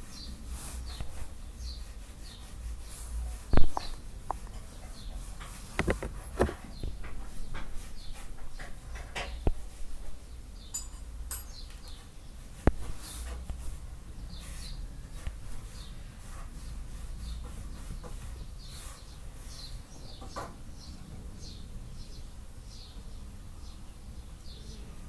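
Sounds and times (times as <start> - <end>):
small birds chirping: 0.0 - 25.0
sharp knocks and clinks: 10.6 - 11.9.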